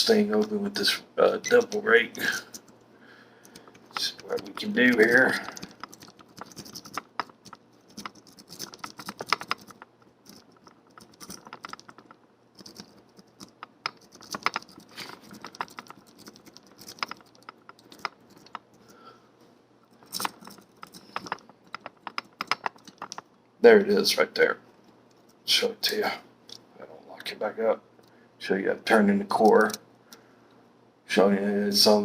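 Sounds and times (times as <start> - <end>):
lock pick clicking and scraping: 3.4 - 18.9, 19.9 - 23.3.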